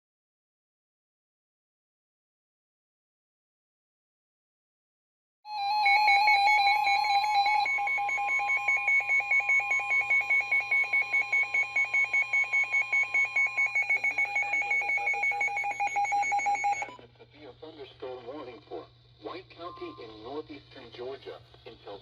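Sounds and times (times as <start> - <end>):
fluttering electronic alarm tones: 5.5 - 17.0.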